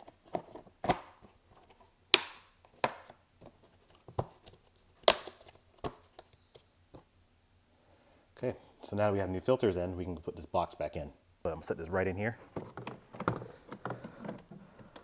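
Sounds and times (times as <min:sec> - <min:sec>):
plastic clicks and knocks: 0:12.5 - 0:15.0.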